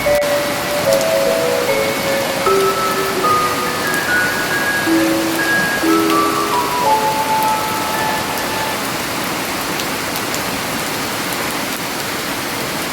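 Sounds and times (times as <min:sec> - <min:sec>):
faint held alarm tones: 0:00.0 - 0:09.1.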